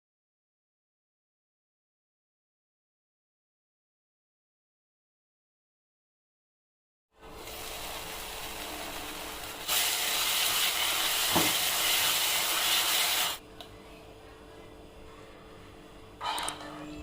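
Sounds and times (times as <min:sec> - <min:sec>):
food sizzling in a pan: 0:07.2 - 0:13.4.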